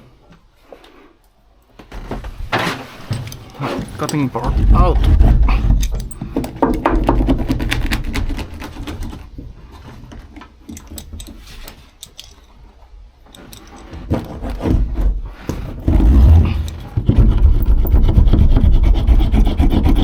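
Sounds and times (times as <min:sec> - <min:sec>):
tools clicking on a work surface: 0:03.0 - 0:09.3, 0:10.2 - 0:12.6, 0:13.2 - 0:14.6, 0:16.5 - 0:18.2.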